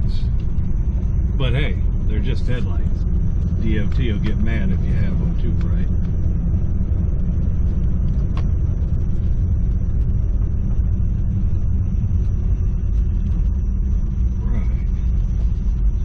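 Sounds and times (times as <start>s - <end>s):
car engine and road noise: 0.0s - 16.0s.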